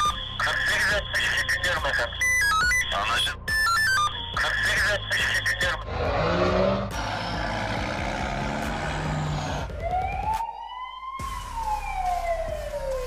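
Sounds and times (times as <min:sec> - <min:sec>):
police siren wailing: 0:00.0 - 0:13.0
vehicle engine: 0:05.7 - 0:09.8.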